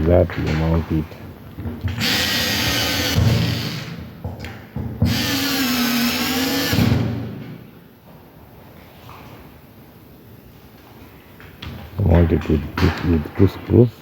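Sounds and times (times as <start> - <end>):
power drill running: 1.9 - 4.0, 5.0 - 7.3.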